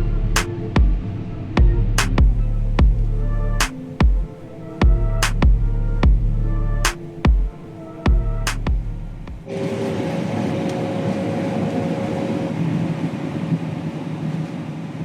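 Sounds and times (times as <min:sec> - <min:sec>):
music with sharp hits: 0:00.0 - 0:09.5.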